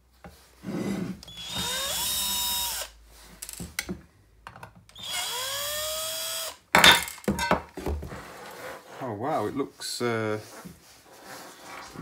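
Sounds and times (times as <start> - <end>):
cordless drill whining: 1.2 - 3.6, 4.9 - 6.6.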